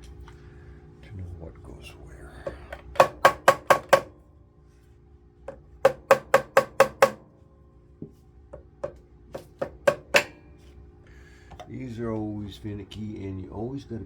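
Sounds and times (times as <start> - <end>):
hammer striking metal: 5.8 - 7.3, 8.8 - 10.5.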